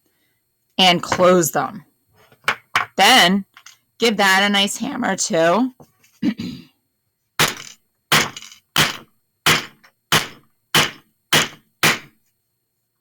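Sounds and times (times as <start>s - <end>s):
hammer striking metal: 7.4s - 12.1s.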